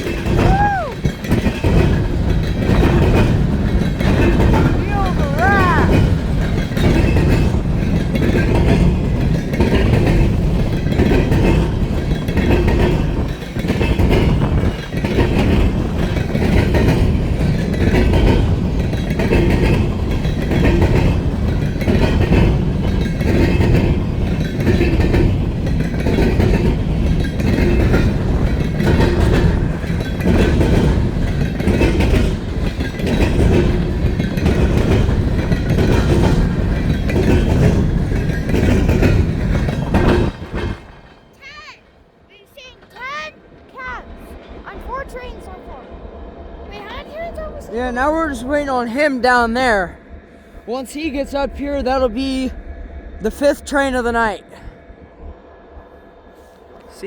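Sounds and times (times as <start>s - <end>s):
train wheels clattering over rail joints: 0.0s - 45.0s.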